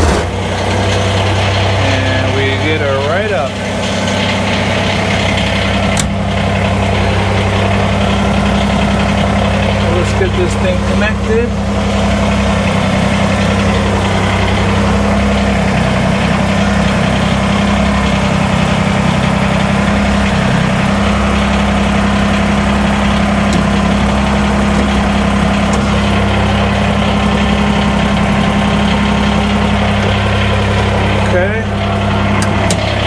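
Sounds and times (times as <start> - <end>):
diesel tractor engine running: 0.0 - 33.0.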